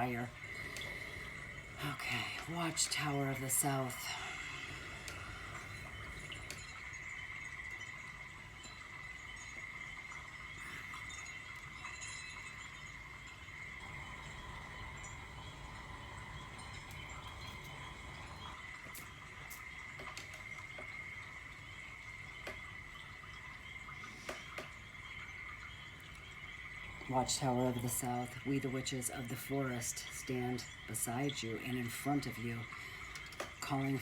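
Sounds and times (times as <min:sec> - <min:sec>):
high-pitched insect chorus: 0:00.0 - 0:20.0.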